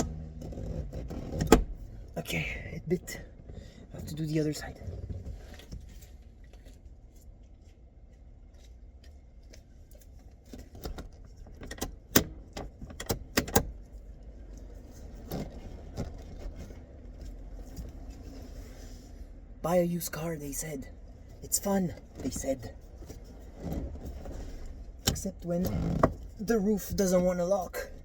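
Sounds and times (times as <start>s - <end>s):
car roof latch clicking: 0.0s - 1.8s
low steady rumble: 0.0s - 28.0s.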